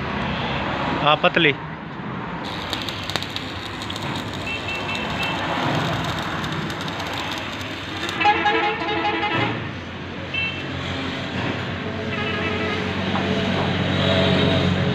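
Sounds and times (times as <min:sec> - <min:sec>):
welding arc crackling: 0:02.4 - 0:08.9.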